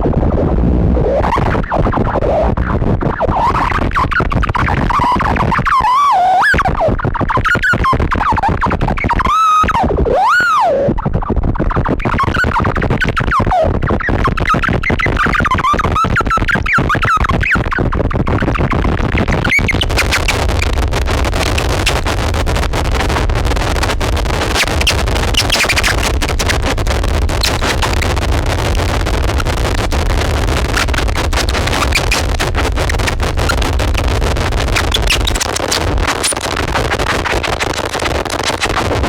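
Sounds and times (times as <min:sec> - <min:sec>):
distorted noise music: 0:00.0 - 0:05.4, 0:14.3 - 0:39.0
squealing tones sweeping in pitch: 0:23.8 - 0:38.8.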